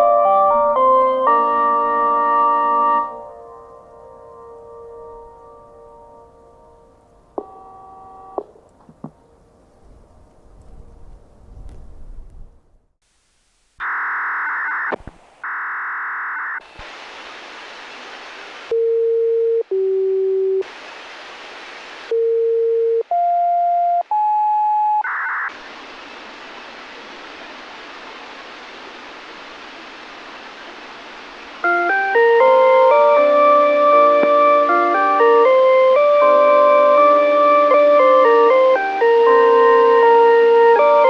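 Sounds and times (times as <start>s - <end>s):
chime melody: 7.4s - 8.4s
buzzy radio noise bursts: 13.0s - 18.8s, 20.6s - 22.2s, 25.0s - 35.1s
steady radio hiss: 13.0s - 19.5s, 20.4s - 22.7s, 25.1s - 36.0s.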